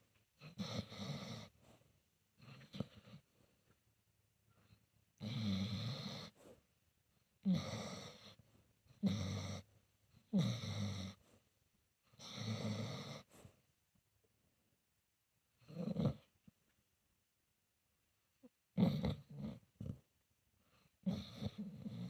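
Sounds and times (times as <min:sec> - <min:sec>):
dog snoring: 0:00.4 - 0:01.6, 0:02.4 - 0:03.2, 0:04.6 - 0:06.6, 0:07.4 - 0:11.2, 0:12.1 - 0:13.4, 0:15.6 - 0:16.3, 0:18.8 - 0:20.0, 0:20.8 - 0:22.0.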